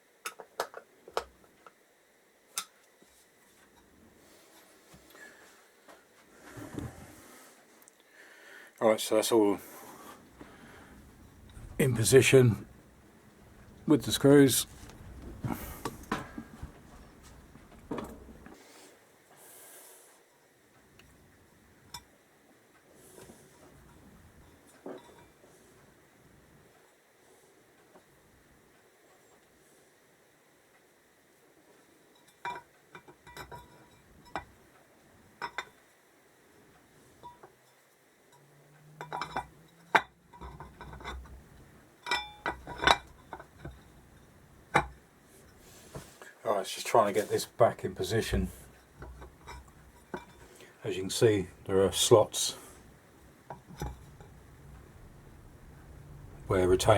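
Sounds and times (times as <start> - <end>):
tools knocking and clicking: 0.3 - 1.3.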